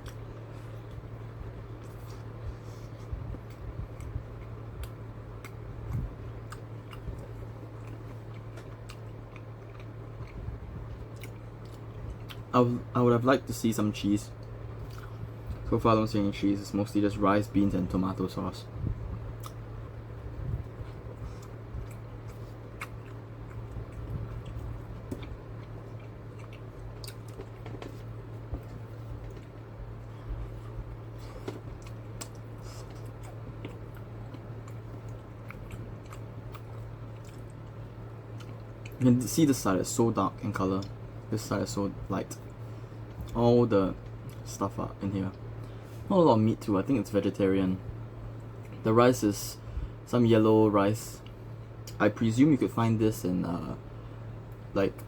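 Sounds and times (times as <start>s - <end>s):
steady low hum: 0.0s - 55.0s
close-up chewing: 1.7s - 12.5s, 20.4s - 39.0s.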